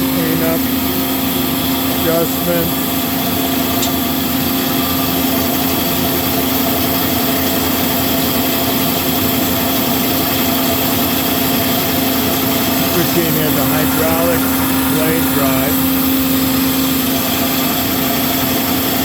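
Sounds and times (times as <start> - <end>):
bandsaw running: 11.7 - 18.1.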